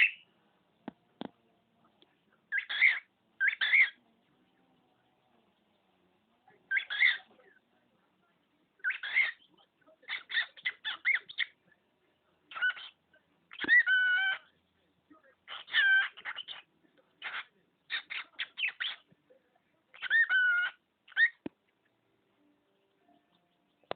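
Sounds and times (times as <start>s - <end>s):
cockatiel chirping and squawking: 0.0s - 0.2s, 2.5s - 4.0s, 6.7s - 7.3s, 8.8s - 9.5s, 10.1s - 11.6s, 12.5s - 14.5s, 15.5s - 19.1s, 19.9s - 21.4s.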